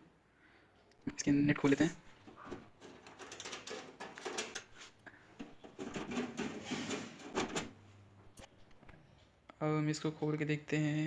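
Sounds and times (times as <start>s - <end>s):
screws scraping and clicking: 2.8s - 4.8s.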